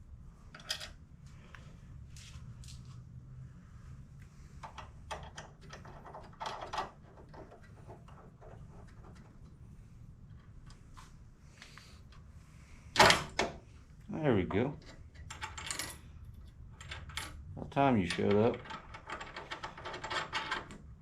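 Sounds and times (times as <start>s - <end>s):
metallic clicks and clatters: 18.0s - 20.9s.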